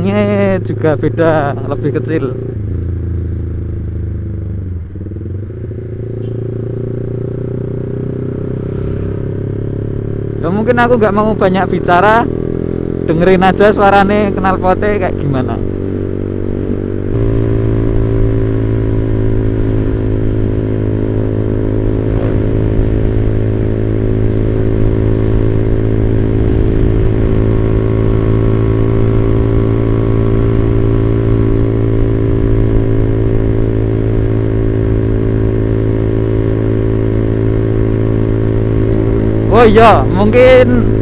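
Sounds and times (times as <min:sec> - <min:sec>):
motorcycle engine running: 0:00.0 - 0:41.0.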